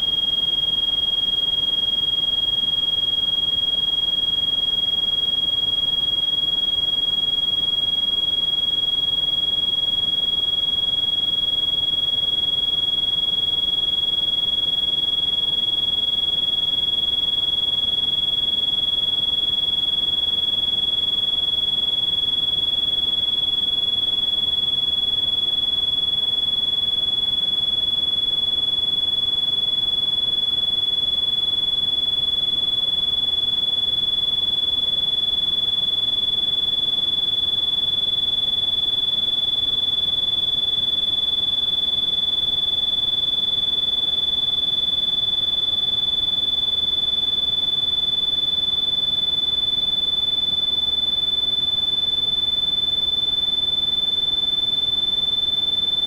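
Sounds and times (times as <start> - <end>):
high-pitched pure tone: 0.0 - 7.5.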